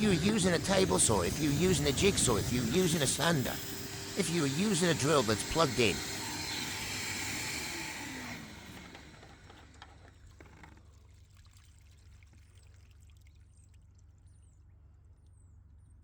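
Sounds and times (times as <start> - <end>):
vacuum motor winding down: 0.0 - 10.8.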